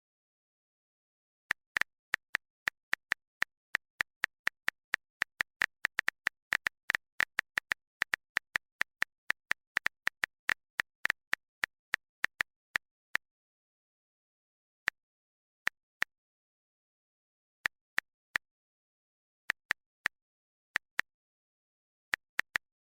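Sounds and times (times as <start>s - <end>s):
smartphone keyboard clicks: 1.5s - 12.6s.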